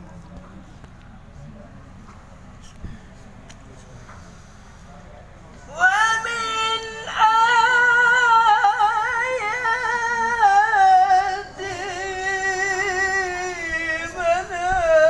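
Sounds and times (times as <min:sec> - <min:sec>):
man reciting melodically: 0:05.6 - 0:15.0.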